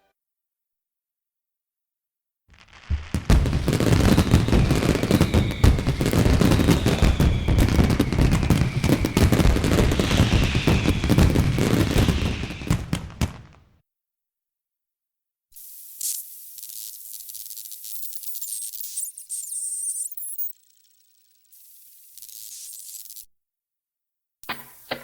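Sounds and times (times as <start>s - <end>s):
fireworks crackling and popping: 2.5s - 13.6s
falling whistles: 3.2s - 13.5s.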